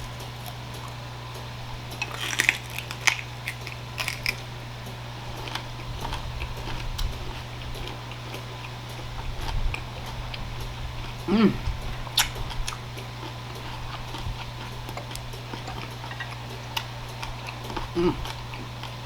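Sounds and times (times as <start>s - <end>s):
chewing and crunching food: 0.0s - 19.0s.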